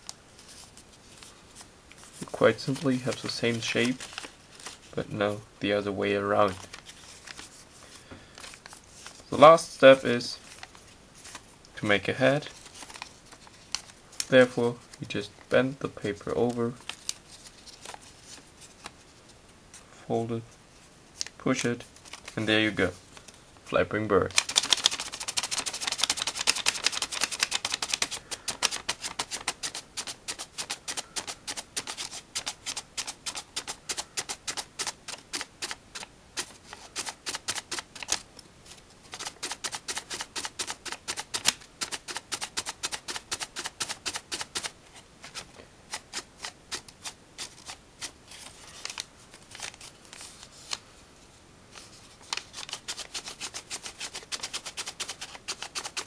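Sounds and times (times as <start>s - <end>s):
folded paper crackling and clicking: 0.0s - 5.0s, 6.5s - 7.6s, 12.4s - 14.9s, 16.4s - 19.0s, 21.2s - 22.5s, 24.2s - 50.8s, 51.7s - 56.0s.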